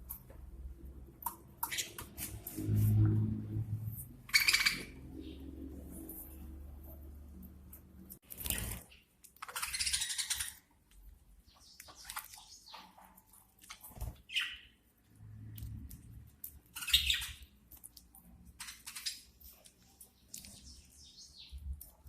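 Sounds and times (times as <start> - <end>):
budgerigars chirping: 4.3 - 5.4, 9.5 - 10.6, 16.8 - 17.4.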